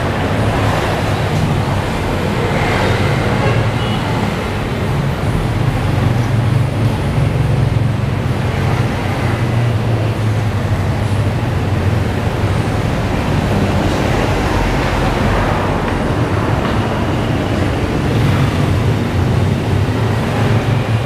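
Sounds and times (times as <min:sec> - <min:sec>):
road traffic noise: 0:00.0 - 0:21.0.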